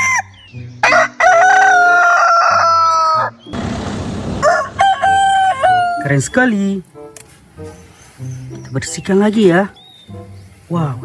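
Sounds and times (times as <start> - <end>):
rooster crowing: 0.0 - 3.4, 4.3 - 6.1.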